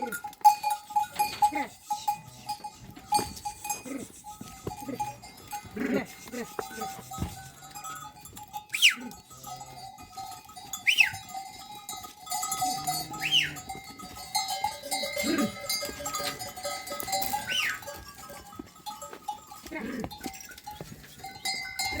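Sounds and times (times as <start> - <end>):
animal bells clinking: 0.0 - 22.0
low bleat: 12.6 - 13.7.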